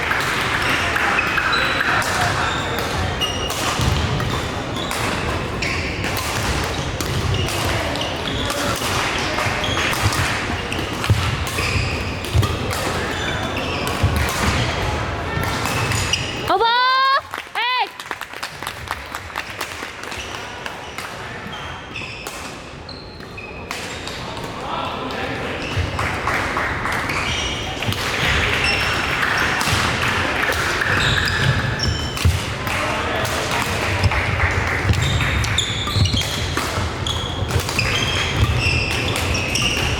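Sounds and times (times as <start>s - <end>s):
shoes squeaking on floor: 1.0s - 14.7s, 15.8s - 16.5s, 20.2s - 24.1s, 25.4s - 26.1s, 27.0s - 29.6s, 30.8s - 32.4s, 34.8s - 39.9s.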